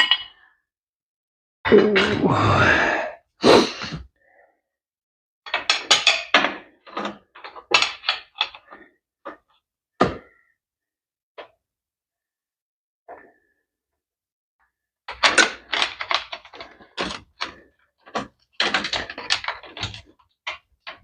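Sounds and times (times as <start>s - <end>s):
metal tools knocking and clattering: 5.5s - 8.7s, 15.1s - 21.0s.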